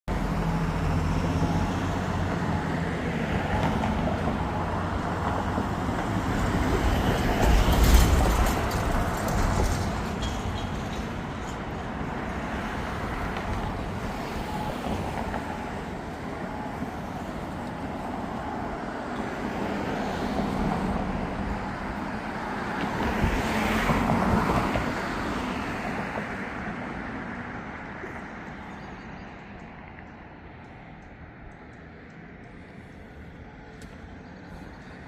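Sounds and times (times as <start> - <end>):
road traffic rushing: 0.1 - 35.0.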